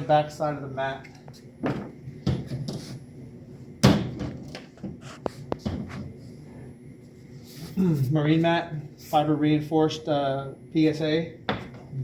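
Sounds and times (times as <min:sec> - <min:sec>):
knocks and clatter on workbench: 0:01.6 - 0:02.8, 0:11.5 - 0:11.9.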